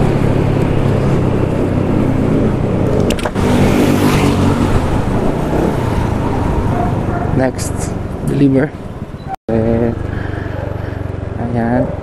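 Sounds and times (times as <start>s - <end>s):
wind rumble on microphone: 0.0s - 9.4s
motorcycle engine running: 0.0s - 12.0s.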